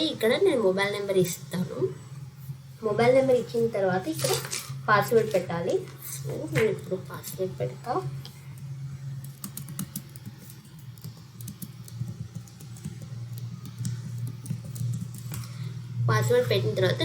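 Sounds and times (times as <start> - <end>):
steady low hum: 0.0 - 17.0
keyboard keys clicking: 9.2 - 15.5.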